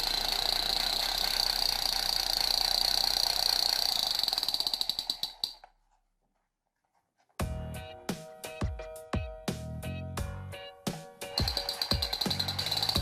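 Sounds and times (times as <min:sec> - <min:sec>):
toy gun electronic firing rattle: 0:00.0 - 0:05.7, 0:11.4 - 0:13.0.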